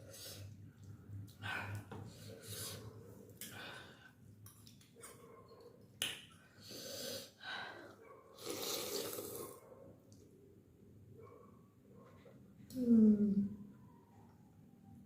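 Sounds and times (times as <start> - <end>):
slurping and breathing: 6.4 - 9.6.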